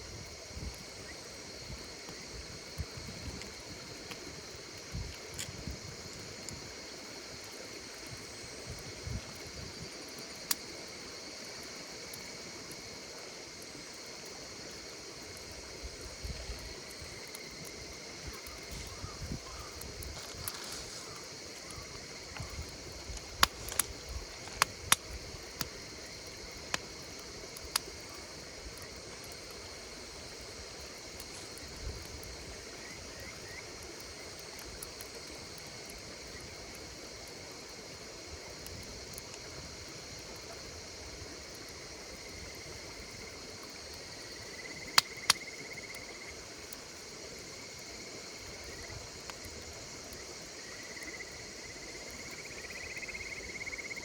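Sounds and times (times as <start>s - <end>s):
insects calling: 0.0s - 54.0s
wood fire crackling: 0.0s - 54.0s
fire popping sharply: 16.4s - 35.2s, 44.8s - 45.6s.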